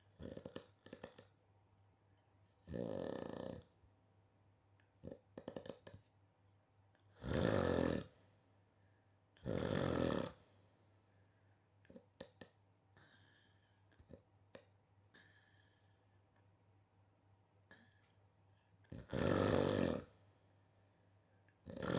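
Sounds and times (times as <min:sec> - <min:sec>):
person snoring loudly: 0:02.7 - 0:03.6, 0:07.2 - 0:08.1, 0:09.4 - 0:10.4, 0:18.9 - 0:20.1, 0:21.7 - 0:21.9.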